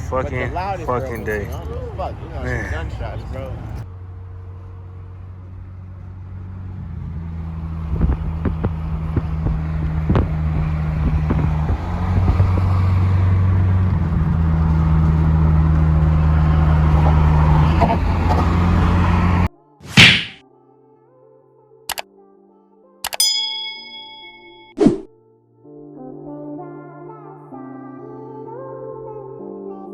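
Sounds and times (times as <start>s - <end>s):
car engine running: 2.0s - 19.5s
sharp clicks: 23.0s - 23.2s.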